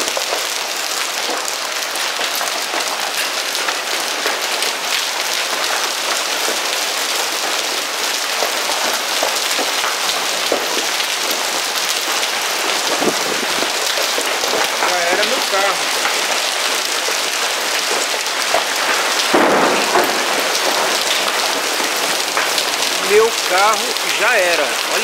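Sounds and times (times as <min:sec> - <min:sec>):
hail and rain pelting: 0:00.0 - 0:25.0.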